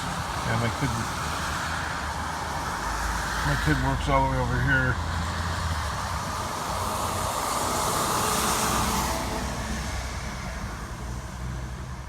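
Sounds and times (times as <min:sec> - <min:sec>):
road and traffic hiss: 0:00.0 - 0:12.0.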